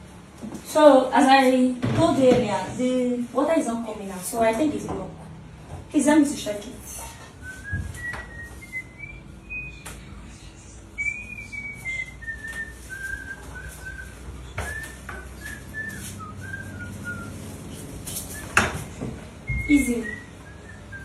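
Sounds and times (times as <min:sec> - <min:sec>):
person whistling a tune: 0:07.4 - 0:10.0, 0:11.0 - 0:17.5, 0:19.5 - 0:21.0.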